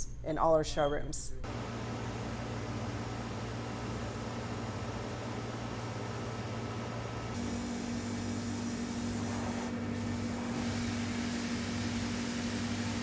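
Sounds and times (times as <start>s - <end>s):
machinery humming: 1.4s - 13.0s.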